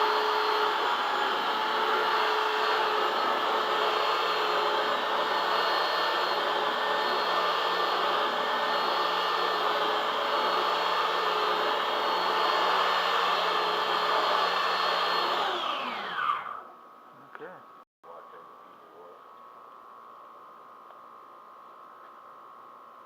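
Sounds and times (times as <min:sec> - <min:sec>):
electric sander whine: 0:00.0 - 0:16.9.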